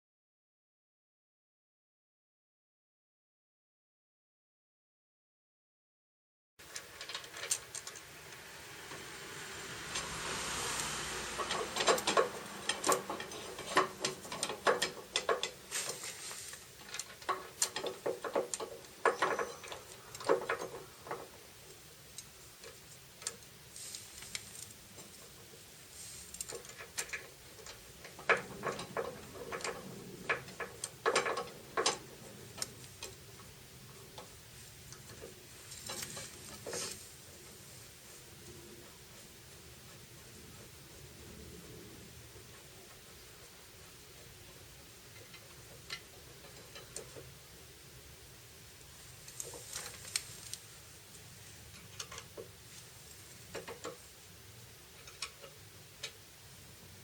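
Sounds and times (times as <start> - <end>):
short hiss: 15.7 - 16.7.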